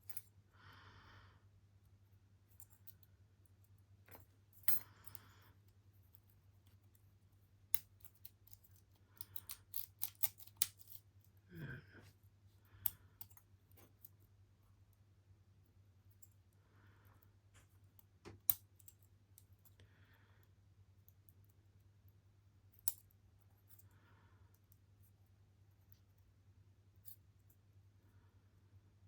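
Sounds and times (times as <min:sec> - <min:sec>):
lock-picking tools clicking: 0:07.7 - 0:11.0.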